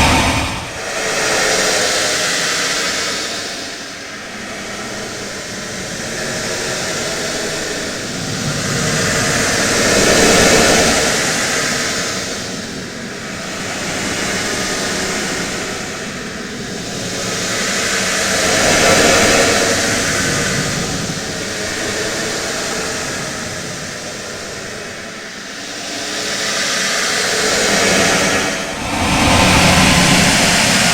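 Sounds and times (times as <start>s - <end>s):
loud rushing space ambience: 0.0s - 6.5s, 17.5s - 30.9s.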